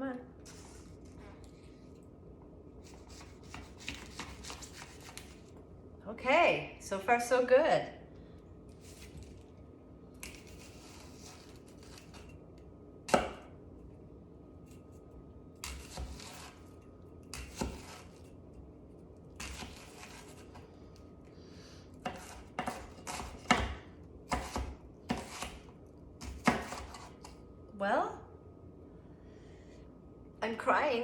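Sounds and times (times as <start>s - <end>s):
knife slicing onion: 2.8s - 5.5s, 10.2s - 12.3s, 13.1s - 13.5s, 15.6s - 18.4s, 19.3s - 20.7s, 21.9s - 27.4s.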